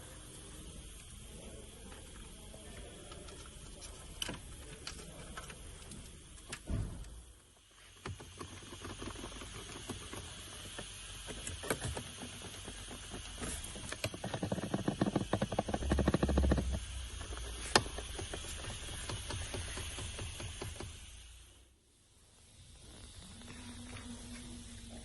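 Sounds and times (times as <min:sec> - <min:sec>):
thump: 0:06.6 - 0:07.3
dashboard trim creaking and clicking: 0:08.0 - 0:20.9.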